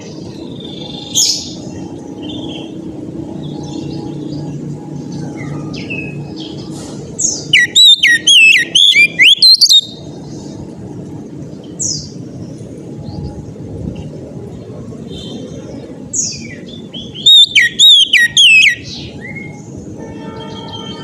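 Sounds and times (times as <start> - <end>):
bird singing whistled notes: 0.4 - 10.1, 16.2 - 19.7.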